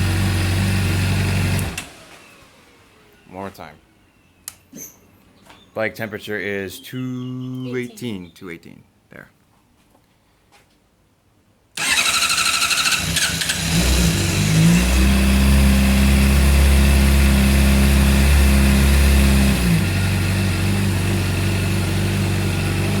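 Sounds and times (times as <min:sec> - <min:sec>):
motorcycle starter cranking: 0:11.8 - 0:14.5
motorcycle engine idling: 0:11.8 - 0:23.0.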